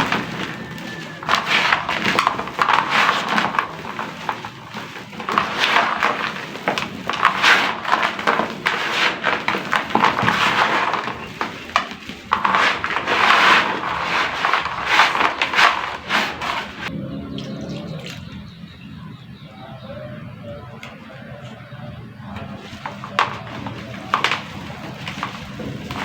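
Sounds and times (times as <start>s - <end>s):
clay chunks crumbling into water: 0.0s - 16.9s, 22.4s - 26.0s.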